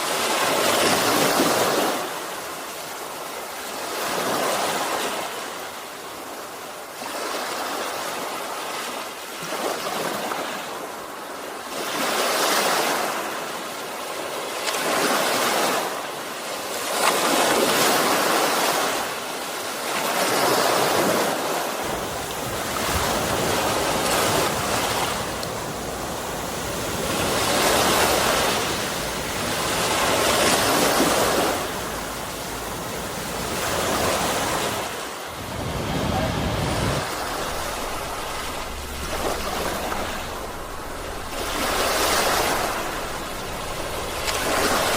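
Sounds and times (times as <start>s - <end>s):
sea waves washing onto shore: 0.0s - 44.9s
low rumble: 21.8s - 44.9s.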